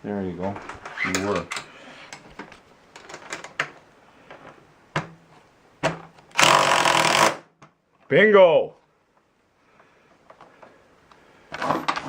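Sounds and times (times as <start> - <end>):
power drill driving screw into metal: 6.3 - 7.4.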